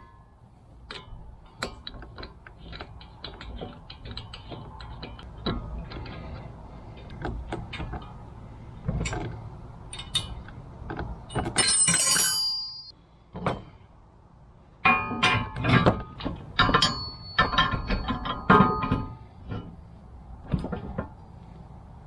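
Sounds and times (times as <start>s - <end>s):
metal parts clinking and rattling: 11.3s - 12.9s
bright ringing metal clang: 11.6s - 12.9s.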